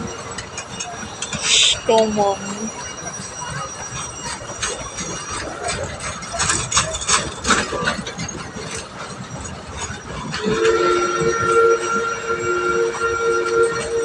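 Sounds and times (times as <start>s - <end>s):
train cars clanking: 0.0s - 14.0s
train running: 0.0s - 14.0s
train whistle chord: 10.4s - 14.0s.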